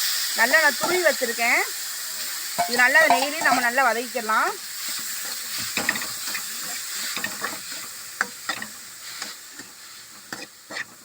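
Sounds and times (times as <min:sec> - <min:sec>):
food sizzling in a pan: 0:00.0 - 0:11.0
spoon scraping a pan: 0:02.6 - 0:03.7, 0:04.8 - 0:11.0.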